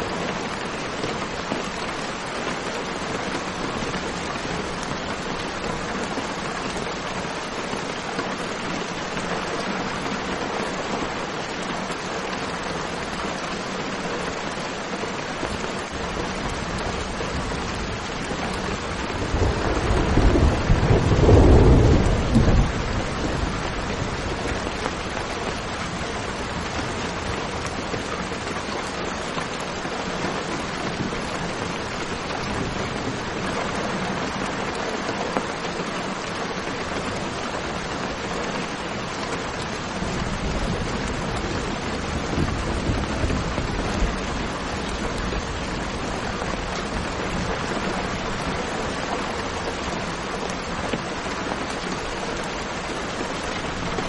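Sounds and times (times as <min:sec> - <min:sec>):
steady rain hiss: 0:00.0 - 0:54.0
thunder rolling: 0:19.0 - 0:23.8.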